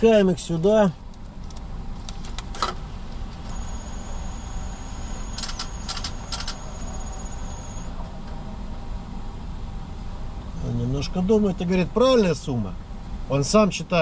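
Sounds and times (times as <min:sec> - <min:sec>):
car engine idling: 0:02.8 - 0:10.4
thin high machine whine: 0:03.4 - 0:08.0.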